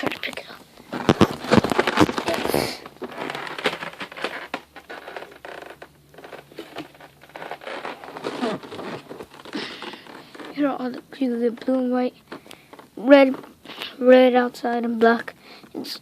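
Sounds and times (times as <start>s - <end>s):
cardboard box rustling and knocking: 0.9s - 4.7s.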